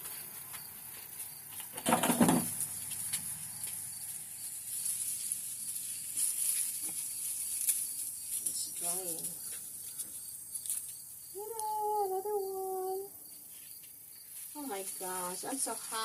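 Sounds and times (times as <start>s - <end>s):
insects trilling: 0.0s - 16.0s
dry onion skins rustling: 2.5s - 11.7s.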